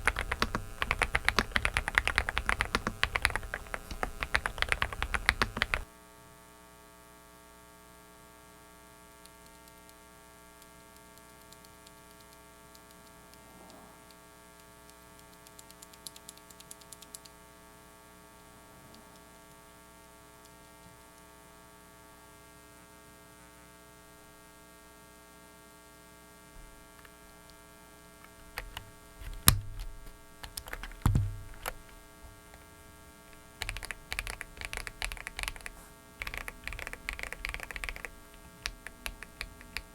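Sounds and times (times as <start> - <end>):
mechanical keyboard keys clicking: 0.0 - 5.9, 15.2 - 17.4, 28.5 - 31.9, 33.6 - 39.9
microphone hum and hiss: 0.0 - 6.5, 26.3 - 39.9
loud thumps: 31.0 - 31.7.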